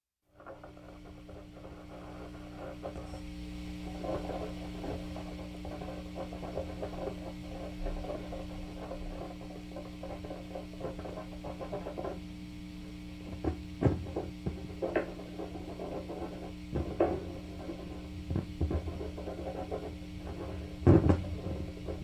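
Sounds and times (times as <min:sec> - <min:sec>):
steady electrical hum: 0:00.2 - 0:22.0
scratching and crackling: 0:00.3 - 0:22.0
loud knocks: 0:13.3 - 0:22.0.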